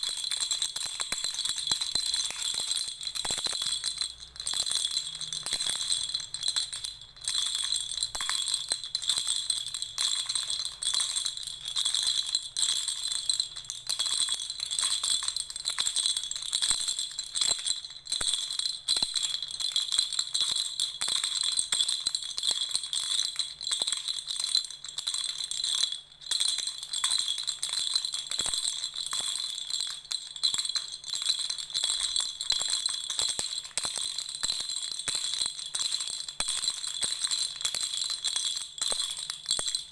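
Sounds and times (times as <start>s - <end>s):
baby rattle jingling: 0.0s - 12.4s.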